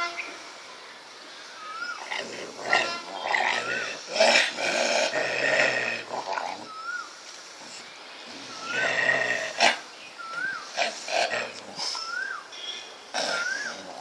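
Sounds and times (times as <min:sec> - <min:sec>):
dogs snarling and growling: 0:02.0 - 0:06.7, 0:08.3 - 0:09.8, 0:10.7 - 0:12.0, 0:13.1 - 0:14.0.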